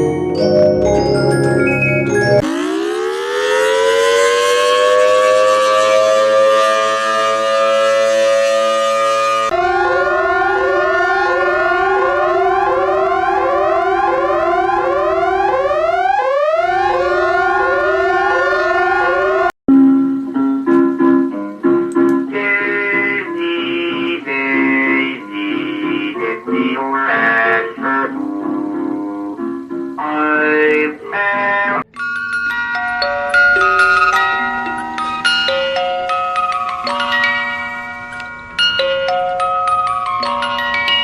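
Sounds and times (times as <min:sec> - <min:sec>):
electronic alarm rising sweeps: 0:01.6 - 0:19.5
emergency warning siren wailing: 0:02.4 - 0:19.6
short musical tones: 0:05.0 - 0:19.8.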